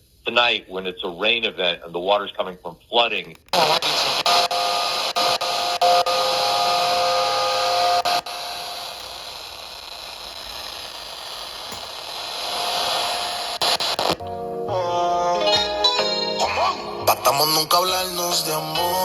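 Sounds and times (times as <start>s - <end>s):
faint steady tones: 0.0s - 19.0s
radio static hiss: 0.0s - 19.0s
sharp clicks: 3.1s - 14.4s.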